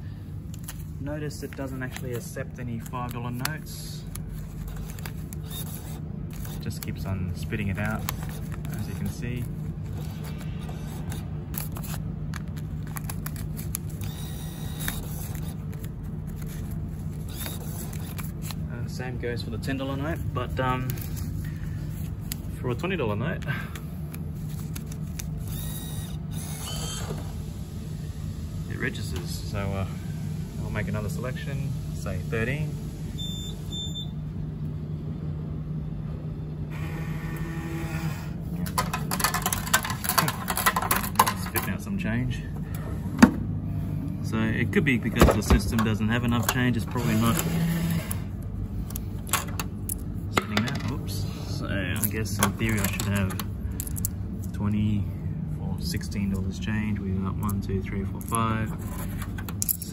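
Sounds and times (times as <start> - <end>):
vending machine humming: 0.0 - 59.9
whirring motor: 4.4 - 6.9, 12.8 - 15.9, 17.0 - 18.6, 25.1 - 28.8, 36.7 - 38.6, 46.9 - 48.4.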